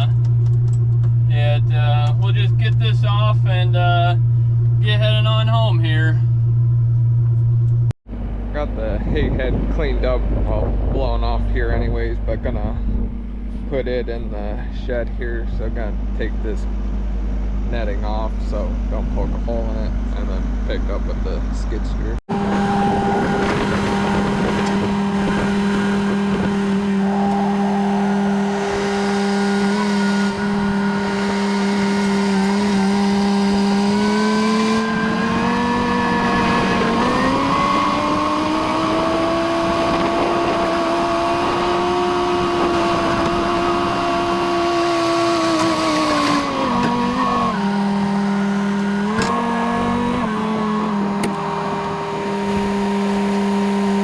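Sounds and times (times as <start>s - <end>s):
skid steer engine revving: 22.3s - 54.0s.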